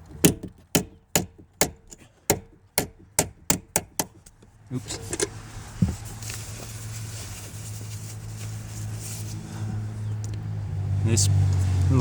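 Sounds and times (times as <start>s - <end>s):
vehicle engine humming: 0.0s - 12.0s.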